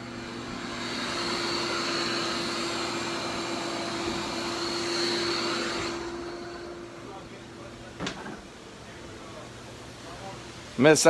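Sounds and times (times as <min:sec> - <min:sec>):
electric blower whirring: 0:00.0 - 0:07.7.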